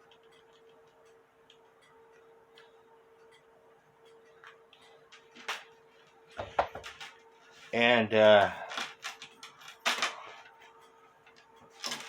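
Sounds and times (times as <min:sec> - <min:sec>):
faint light ticks and clicks: 0:00.0 - 0:06.2
steady faint hum: 0:00.0 - 0:12.0.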